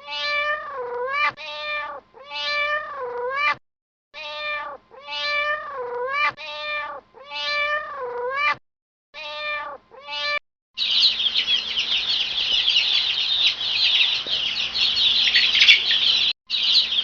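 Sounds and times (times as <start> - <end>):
cat meowing: 0.0 - 3.6, 4.2 - 8.6, 9.2 - 10.4
chicks peeping: 10.8 - 17.0.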